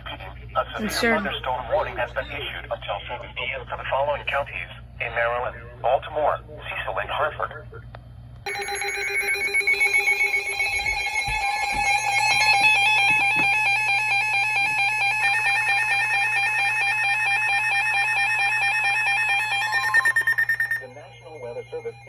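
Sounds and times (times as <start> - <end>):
two-tone alert tone: 8.5 - 22.0.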